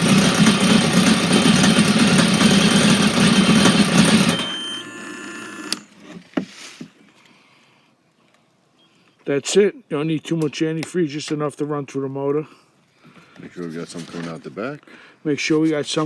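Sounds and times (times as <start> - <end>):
jet ski engine idling: 0.0 - 4.6.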